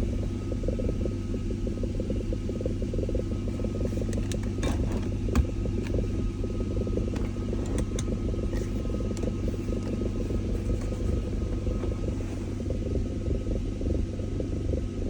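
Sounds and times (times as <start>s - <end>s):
car engine idling: 0.0s - 15.0s
sharp engine knocks: 3.7s - 12.2s.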